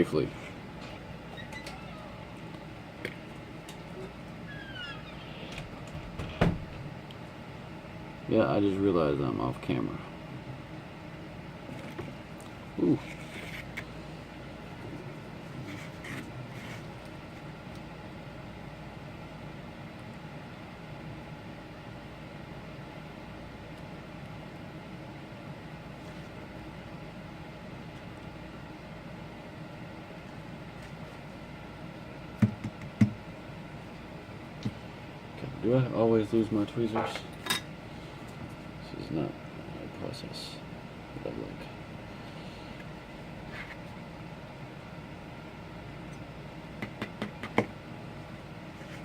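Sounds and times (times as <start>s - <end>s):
machine hum and hiss: 0.0s - 49.0s.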